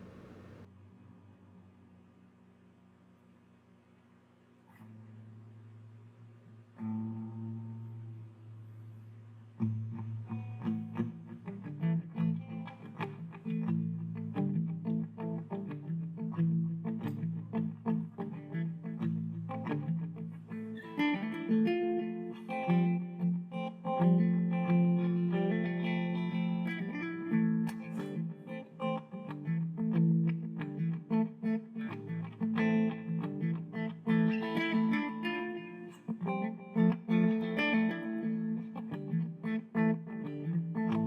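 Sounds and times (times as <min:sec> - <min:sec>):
sustained low line: 0:00.0 - 0:00.7
plucked electric guitar: 0:06.8 - 0:41.0.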